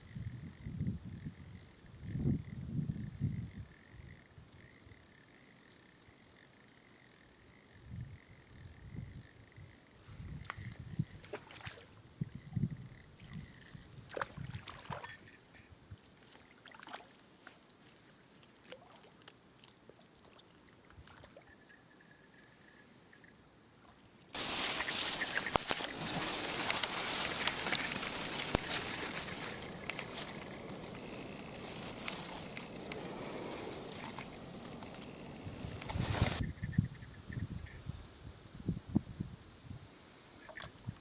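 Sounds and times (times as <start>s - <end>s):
faint clicks and rustles: 17.3s - 38.0s
mountain stream rushing: 24.4s - 36.4s.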